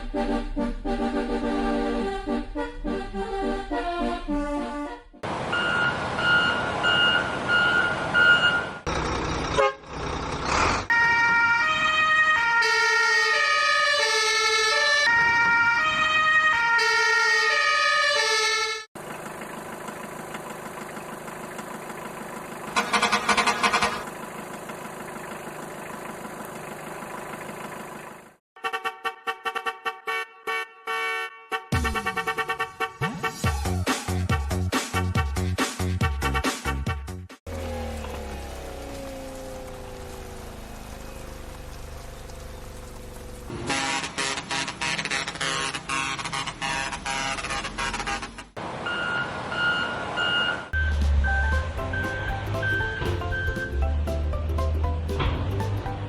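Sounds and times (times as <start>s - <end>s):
siren-like electronic wail: 10.9s - 18.9s
simple beeping melody: 50.3s - 54.0s.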